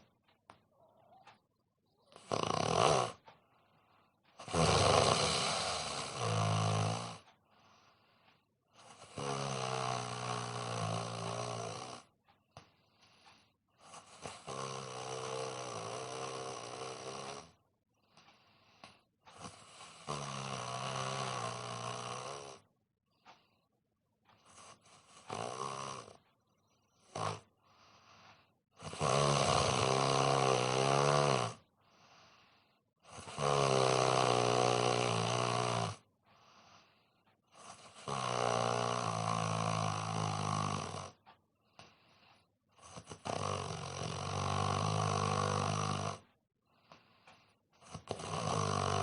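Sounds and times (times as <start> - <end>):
man snoring: 2.0 - 3.3, 4.4 - 7.9, 8.8 - 12.2, 12.9 - 17.6, 18.3 - 22.7, 24.3 - 26.3, 26.9 - 49.0
soft breathing: 3.2 - 6.3, 7.2 - 9.1, 12.3 - 14.5, 17.9 - 19.9, 23.1 - 25.3, 26.5 - 28.6, 31.8 - 32.9, 36.2 - 38.0, 41.2 - 42.7, 46.2 - 49.0.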